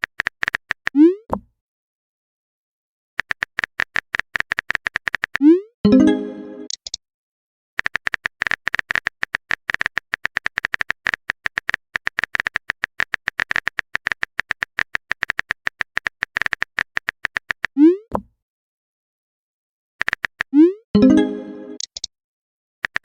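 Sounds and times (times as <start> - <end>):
keyboard typing clicks: 3.2 - 7.0, 20.0 - 22.1
rising bloop message sound: 5.9 - 6.7, 21.0 - 21.8.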